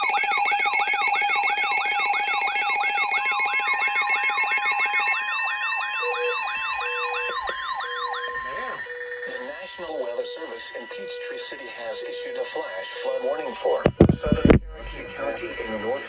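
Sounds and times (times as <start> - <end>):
long steady tone: 0.0 - 16.0
siren-like electronic yelp: 0.0 - 16.0
stepped beeping tones: 3.8 - 15.9
lower pulsing tone: 13.9 - 15.7.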